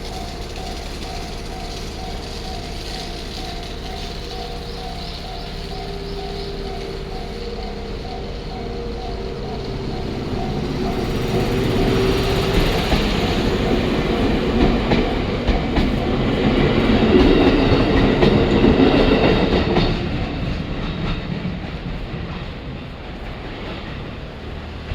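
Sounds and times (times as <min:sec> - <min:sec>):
electric train passing: 0:00.0 - 0:24.9
wheels clacking over rail joints: 0:00.0 - 0:24.9.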